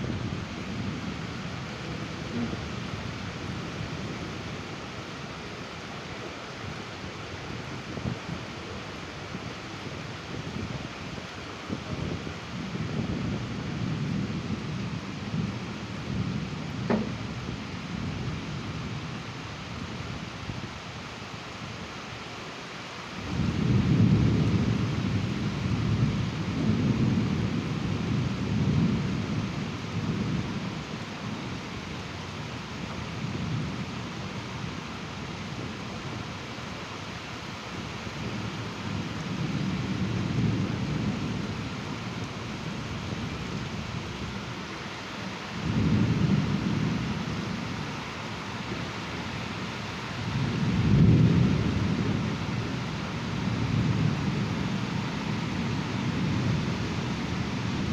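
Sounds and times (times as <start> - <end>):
steady rain: 0.0 - 57.9
rolling thunder: 23.3 - 30.6, 50.2 - 57.9.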